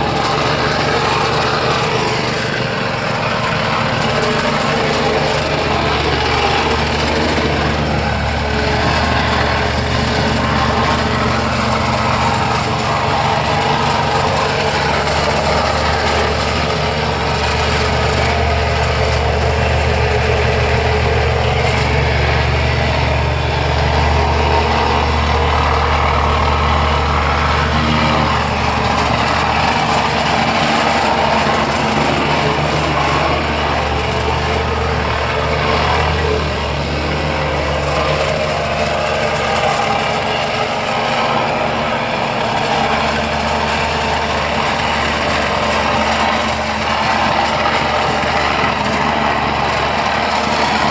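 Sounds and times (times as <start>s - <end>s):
compacting broken brick chips: 0.0s - 50.9s
compactor engine running: 0.0s - 50.9s.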